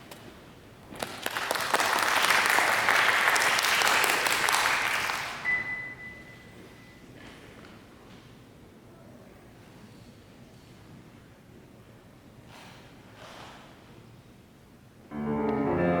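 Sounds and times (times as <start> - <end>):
audience applauding: 1.0 - 5.5.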